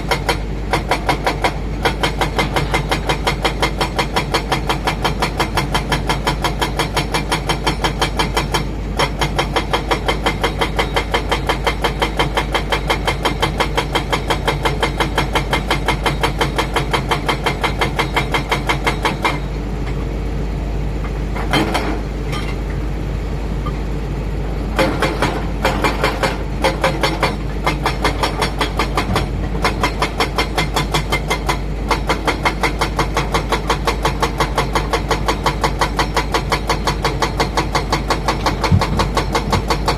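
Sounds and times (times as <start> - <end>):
diesel machinery running: 0.0 - 39.9
pulsing machinery clatter: 24.4 - 39.9
loud knocks: 38.5 - 39.9.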